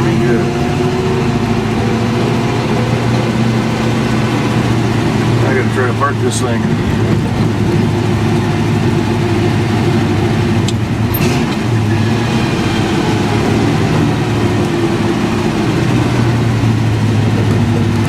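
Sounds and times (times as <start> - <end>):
truck engine running: 0.0 - 18.0.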